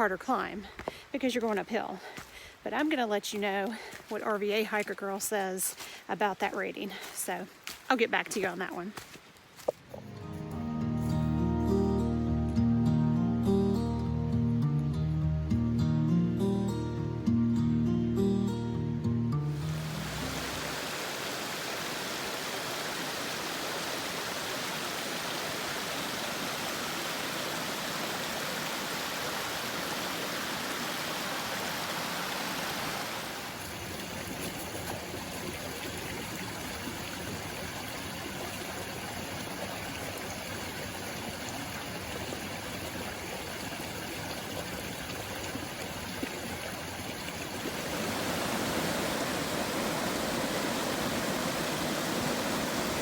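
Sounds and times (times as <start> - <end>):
mountain stream rushing: 0.0 - 10.3, 19.5 - 53.0.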